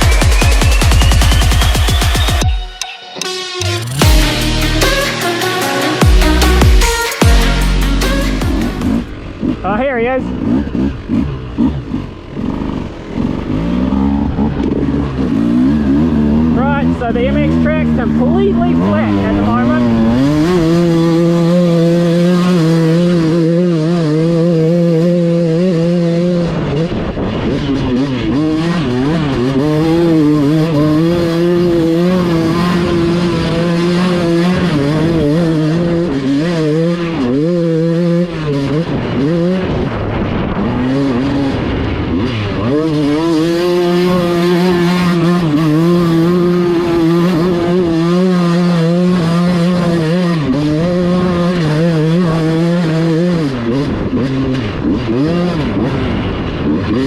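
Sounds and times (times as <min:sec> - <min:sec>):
dirt bike engines revving: 0:00.0 - 0:02.5, 0:03.6 - 0:57.0.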